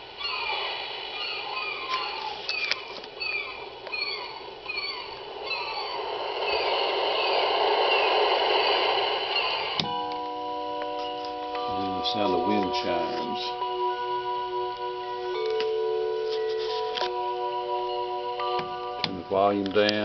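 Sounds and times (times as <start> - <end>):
ocean surf washing: 4.4 - 10.2.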